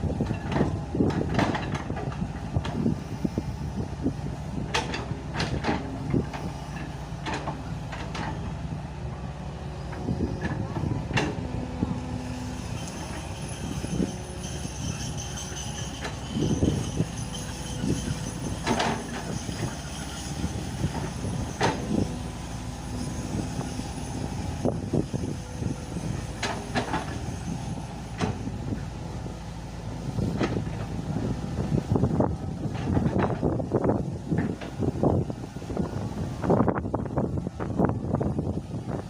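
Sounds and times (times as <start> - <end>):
excavator diesel engine running: 0.0 - 39.0
hydraulic whine: 0.0 - 39.0
metallic clanks and squeals: 9.8 - 29.0.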